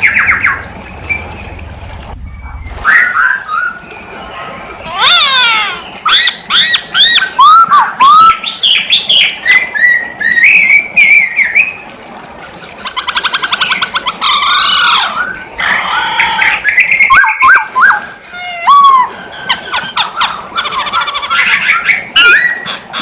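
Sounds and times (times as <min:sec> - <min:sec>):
bird singing whistled notes: 0:02.2 - 0:04.4.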